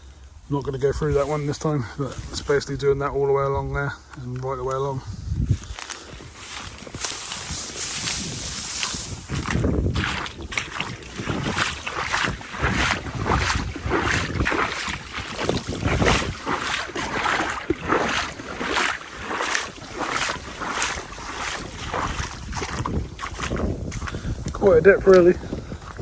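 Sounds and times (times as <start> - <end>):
wind buffeting microphone: 0.4 - 26.0
footsteps splashing in shallow water: 4.0 - 26.0.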